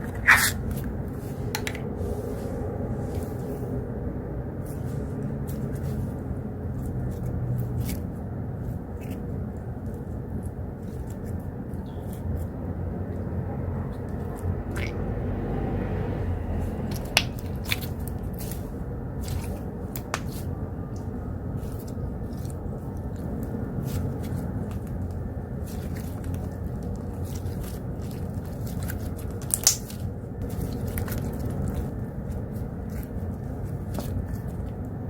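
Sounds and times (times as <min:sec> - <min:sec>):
low rumble of outside noise: 0:00.0 - 0:35.0
slime squished by hand: 0:13.9 - 0:35.0
sticky pops and clicks: 0:29.4 - 0:29.9.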